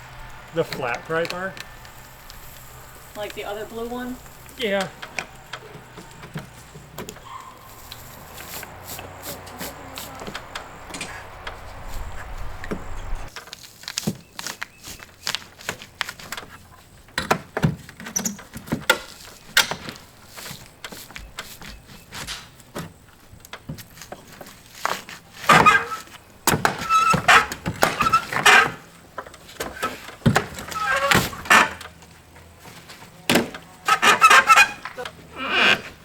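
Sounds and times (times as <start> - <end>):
steady hiss with low rumble: 0.0 - 5.8, 7.7 - 13.3.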